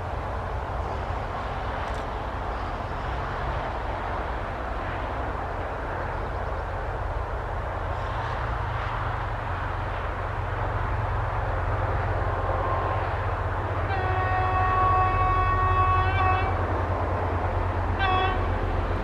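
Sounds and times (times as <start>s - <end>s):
train rolling hiss: 0.0s - 10.4s
diesel locomotive engine rumble: 0.0s - 19.0s.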